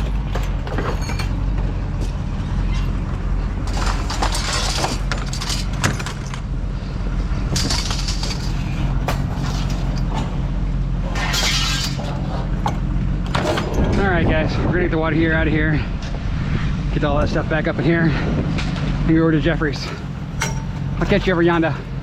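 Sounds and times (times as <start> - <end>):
clatter and knocks of handling: 0.0 - 6.5, 7.5 - 10.4
vehicle engine idling: 5.0 - 14.4, 16.9 - 22.0.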